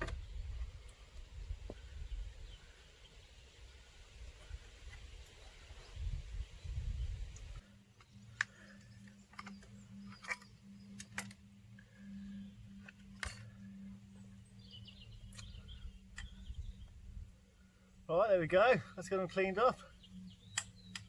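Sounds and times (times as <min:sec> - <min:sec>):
faint low hum: 0:00.0 - 0:21.0
faint bird chirps: 0:05.4 - 0:18.0, 0:19.8 - 0:21.0.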